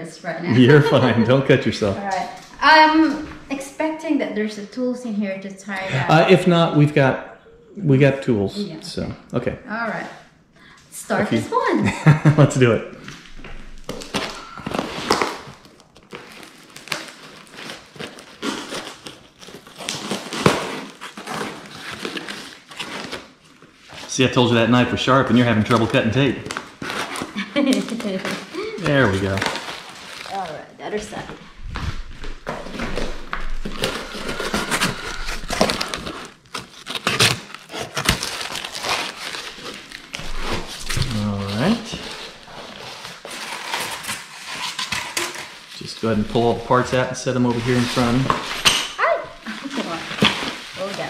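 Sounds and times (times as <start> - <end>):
cardboard and tape crinkling: 13.0 - 51.0
knife cutting packing tape: 13.9 - 23.4, 32.6 - 45.7.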